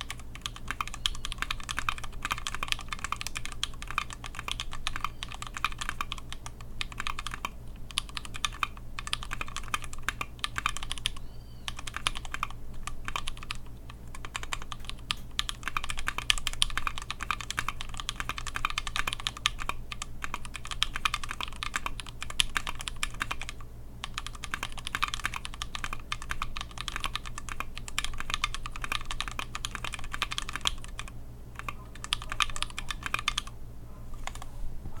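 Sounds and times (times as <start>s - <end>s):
mechanical keyboard typing: 0.0s - 33.5s, 34.2s - 34.5s
low electrical hum: 0.0s - 35.0s.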